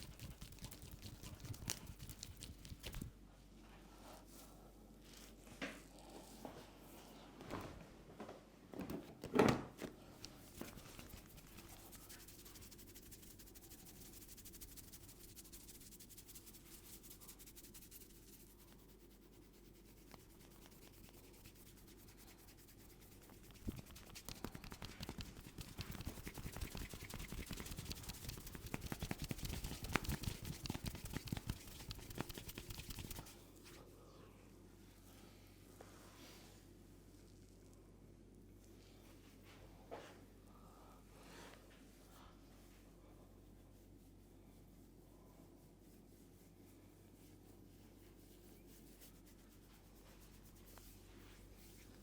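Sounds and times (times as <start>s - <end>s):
fingers scratching through hair: 0.0s - 3.1s, 10.2s - 33.4s, 48.0s - 52.0s.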